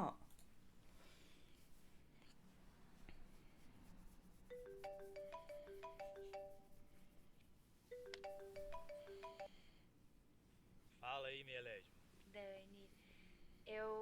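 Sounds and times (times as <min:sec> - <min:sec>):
marimba phone ringtone: 0:04.5 - 0:06.8, 0:07.9 - 0:09.8.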